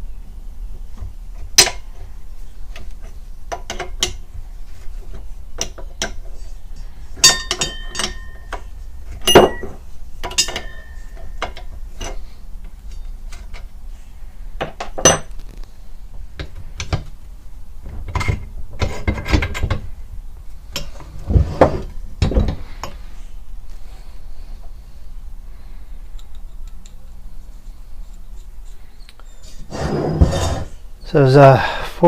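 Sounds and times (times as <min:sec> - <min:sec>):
metal parts handled: 0:05.6 - 0:12.2
wrench clinking on metal: 0:07.2 - 0:08.6, 0:09.2 - 0:12.2.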